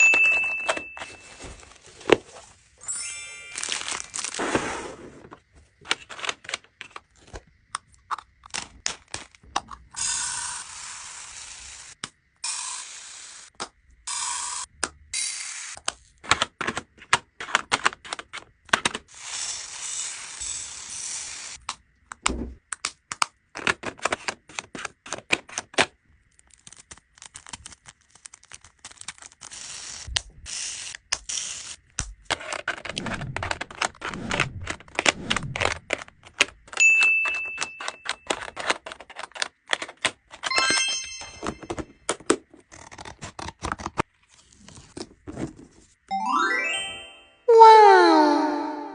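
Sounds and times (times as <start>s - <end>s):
chime-like tones: 2.8s - 4.1s, 40.5s - 41.8s, 46.1s - 47.5s.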